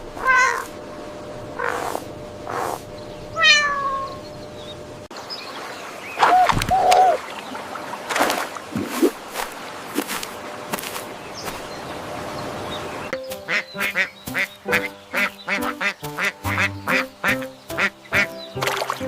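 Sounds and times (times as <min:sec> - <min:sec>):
background music: 0:13.1 - 0:19.0
duck quacking rapidly: 0:13.5 - 0:18.4.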